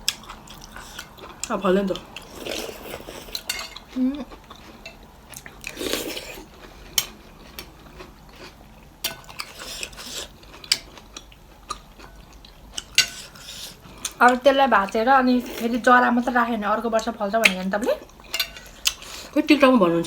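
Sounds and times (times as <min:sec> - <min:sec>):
eating and slurping: 0:00.1 - 0:08.6, 0:09.2 - 0:14.2.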